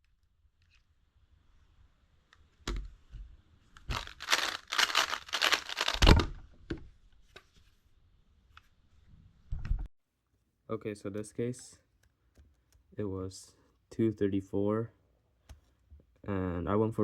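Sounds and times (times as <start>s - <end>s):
plastic puzzle clacking: 3.9s - 6.3s.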